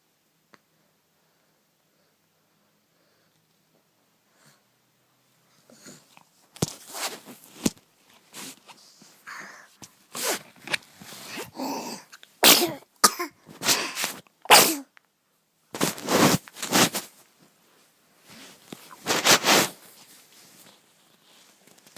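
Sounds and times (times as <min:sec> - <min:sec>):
baby sneezing: 0:11.3 - 0:14.9.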